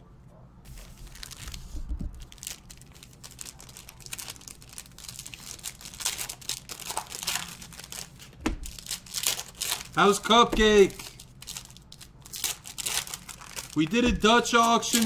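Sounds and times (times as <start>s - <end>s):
plastic packaging crinkling and tearing: 0.7s - 15.0s.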